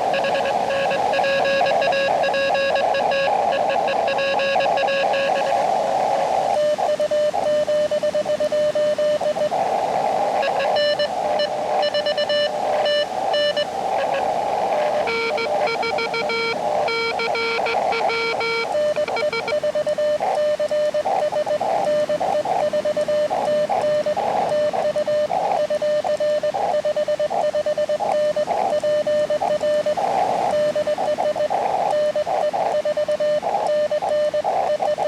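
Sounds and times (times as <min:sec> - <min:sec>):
lower-pitched morse signal: 0:00.0 - 0:05.6, 0:10.4 - 0:20.1
morse code tones: 0:00.0 - 0:05.6, 0:10.4 - 0:26.5
radio band noise hiss: 0:00.0 - 0:35.0.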